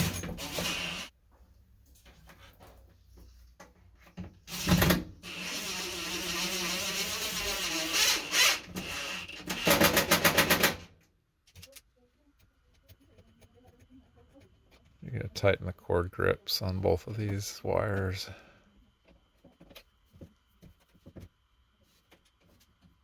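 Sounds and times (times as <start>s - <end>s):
power drill driving screws: 0.0s - 1.1s, 4.5s - 10.8s.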